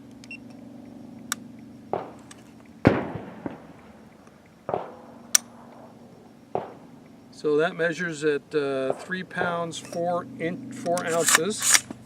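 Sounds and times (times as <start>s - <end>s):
echoing gunshots: 1.8s - 7.3s, 8.8s - 9.9s.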